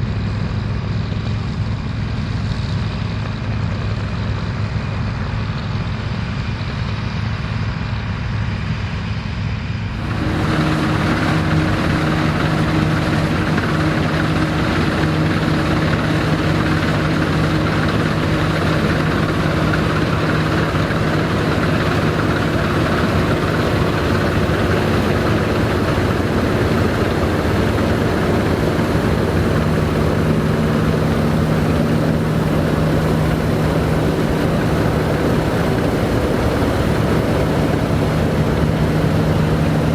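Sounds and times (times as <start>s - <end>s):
combine harvester droning: 0.0s - 39.9s.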